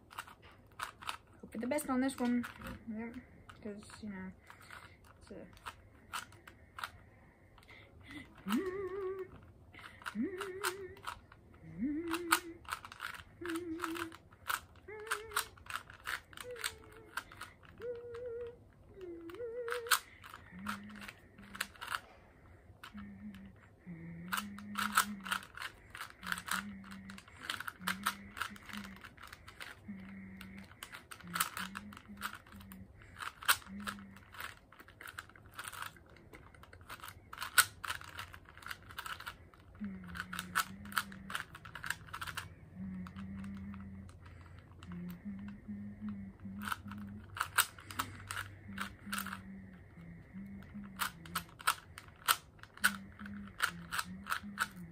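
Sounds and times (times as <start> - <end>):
puzzle cube clacking: 0.0 - 54.9
person humming: 7.7 - 22.2, 22.8 - 35.2, 39.0 - 54.9.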